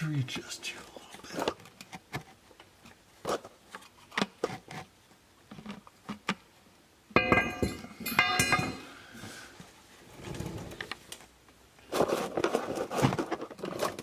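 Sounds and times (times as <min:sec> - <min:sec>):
metal tools knocking and clicking: 0:07.2 - 0:08.8
metal striking metal clanks: 0:07.2 - 0:08.9.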